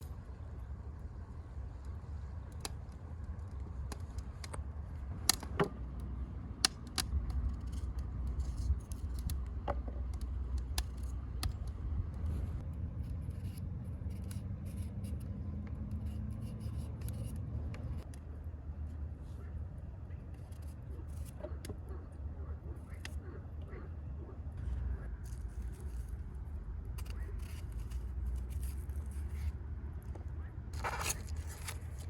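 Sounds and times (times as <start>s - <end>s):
steady low rumble: 0.0s - 32.0s.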